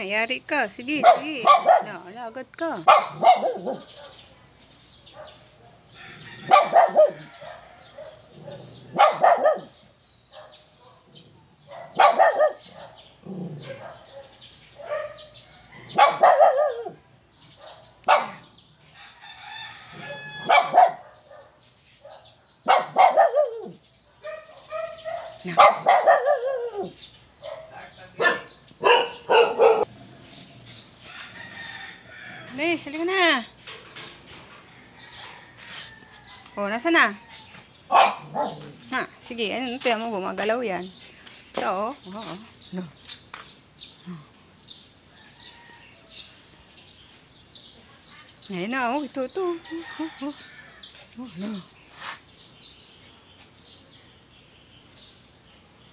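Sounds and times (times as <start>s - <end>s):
dog barking and howling: 1.0s - 2.1s, 2.8s - 4.3s, 5.1s - 9.8s, 10.4s - 18.5s, 20.1s - 30.0s, 37.9s - 38.9s.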